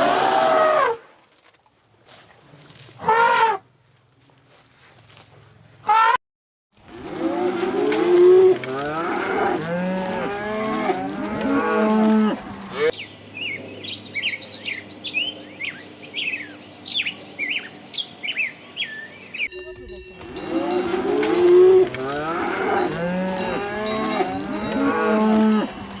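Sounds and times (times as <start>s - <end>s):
cattle mooing: 7.0s - 12.9s, 20.4s - 26.0s.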